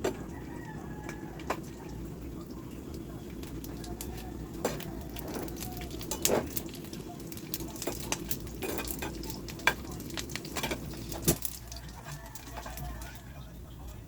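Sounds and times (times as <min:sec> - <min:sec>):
food sizzling in hot oil: 0:00.4 - 0:13.4
utensil scraping a pan: 0:04.0 - 0:13.4.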